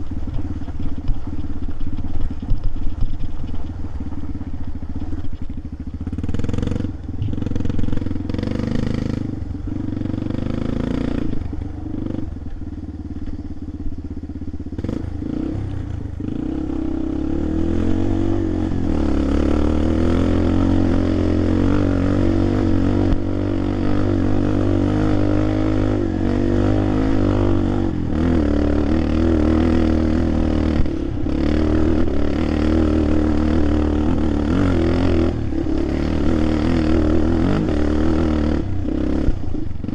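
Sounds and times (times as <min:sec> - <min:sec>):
rattling over rough ground: 0:00.0 - 0:14.1
off-road vehicle engine running: 0:00.0 - 0:39.9.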